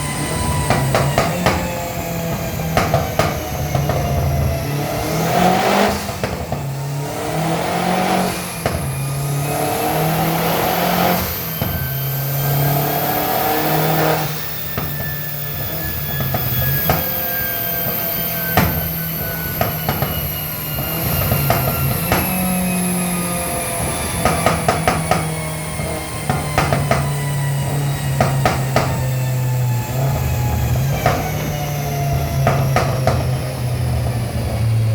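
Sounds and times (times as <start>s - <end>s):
car engine revving: 0.0s - 34.9s
exhaust pops and crackles: 0.0s - 34.9s.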